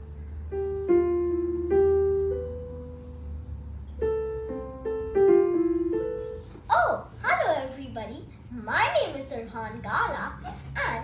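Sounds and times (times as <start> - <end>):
electronic keyboard piano melody: 0.0 - 7.2.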